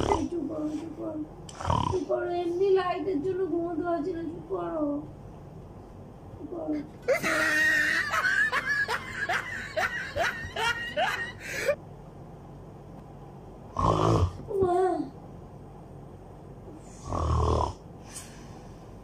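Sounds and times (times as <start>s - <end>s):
person fake snoring: 0.0s - 0.3s, 1.5s - 2.2s, 13.8s - 14.5s, 16.9s - 17.8s.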